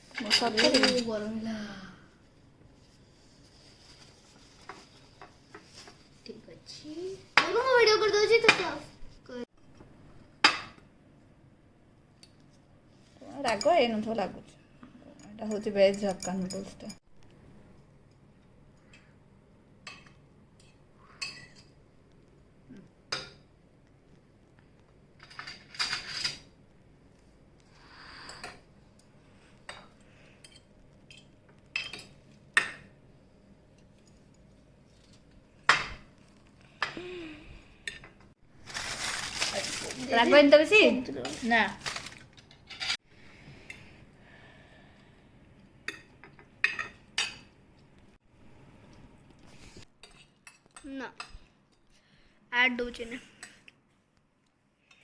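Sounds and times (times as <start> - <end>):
plates and cutlery clinking: 0.2 - 1.2
cutlery clinking on plates: 19.8 - 21.8.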